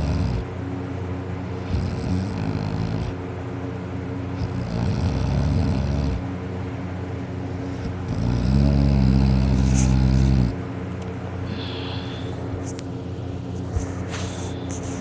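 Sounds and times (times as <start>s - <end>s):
person snoring loudly: 1.7s - 3.2s, 4.4s - 6.2s, 8.0s - 10.6s.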